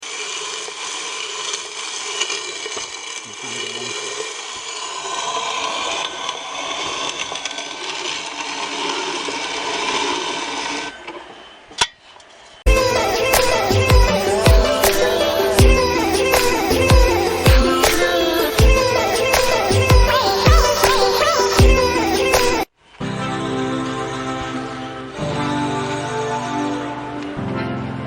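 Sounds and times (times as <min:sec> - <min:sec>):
small motor running: 0:00.0 - 0:11.2, 0:12.7 - 0:22.7.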